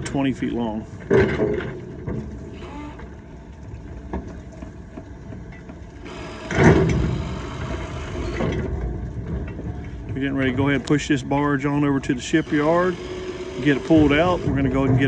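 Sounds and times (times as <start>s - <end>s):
heavy engine rumbling: 6.0s - 15.0s.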